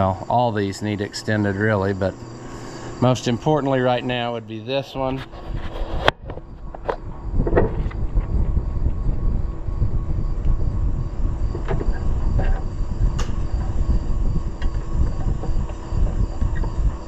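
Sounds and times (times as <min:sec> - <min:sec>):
crickets chirping: 0:00.0 - 0:17.0
loud uneven low rumble: 0:06.3 - 0:17.0.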